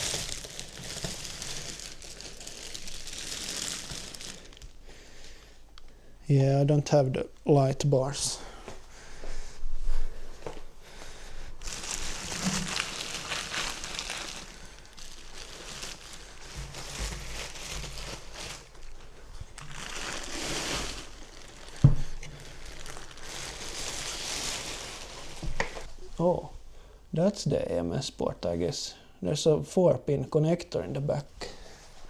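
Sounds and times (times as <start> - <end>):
packaging crinkling: 0.0 - 4.8, 11.6 - 25.9.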